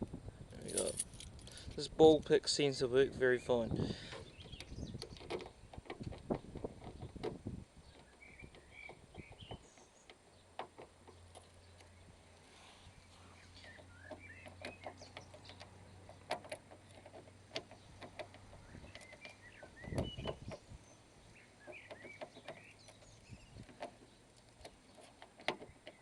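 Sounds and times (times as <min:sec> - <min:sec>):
metal key rattling in door lock: 0:00.6 - 0:01.8, 0:13.7 - 0:20.6
birds chirping: 0:00.7 - 0:26.0.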